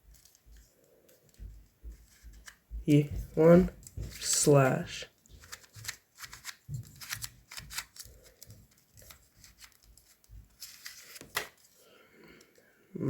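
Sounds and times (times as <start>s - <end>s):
plastic puzzle clicking: 5.3s - 11.6s.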